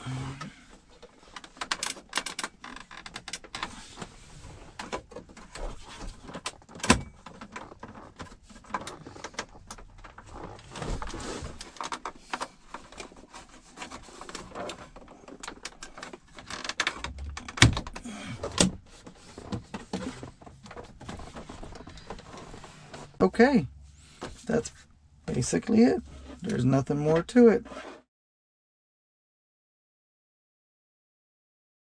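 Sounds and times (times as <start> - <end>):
plastic trim clicks and knocks: 15.4 - 18.7.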